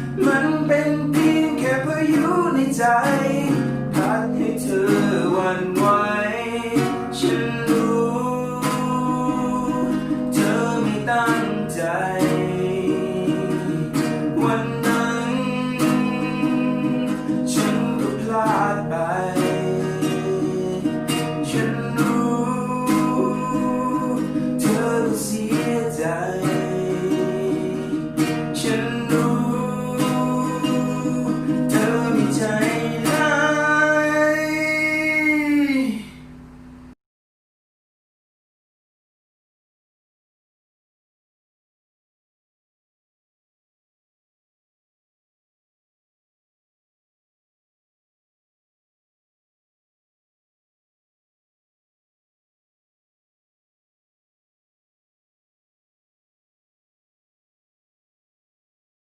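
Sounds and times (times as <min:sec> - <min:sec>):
acoustic guitar strummed: 0:00.0 - 0:36.9.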